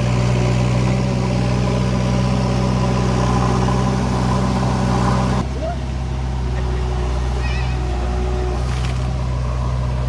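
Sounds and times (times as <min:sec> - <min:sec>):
engine humming steadily: 0:00.0 - 0:10.0.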